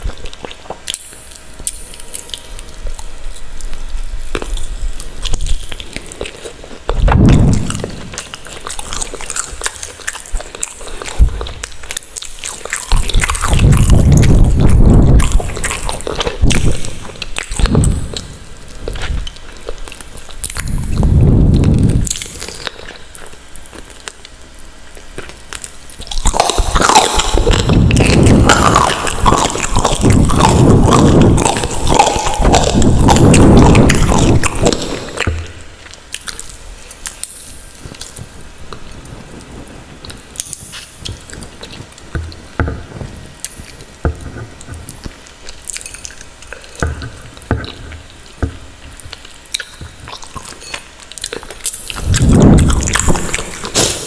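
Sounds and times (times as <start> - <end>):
small mouth clicks: 0.0 - 24.4
chewing: 0.0 - 54.0.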